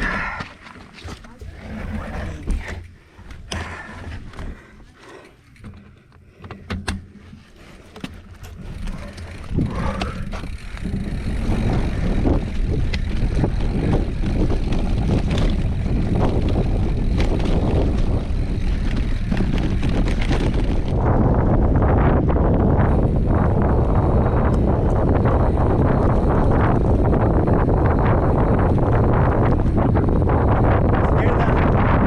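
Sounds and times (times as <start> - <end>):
wind buffeting microphone: 8.5 - 32.0.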